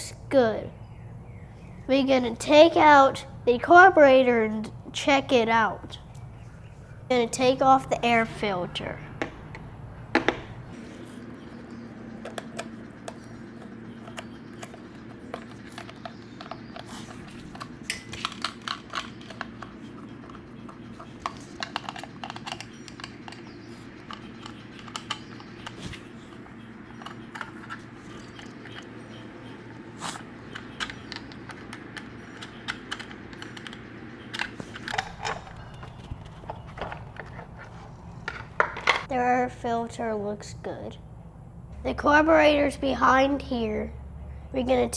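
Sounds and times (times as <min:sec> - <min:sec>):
steady low hum: 0:00.0 - 0:44.9.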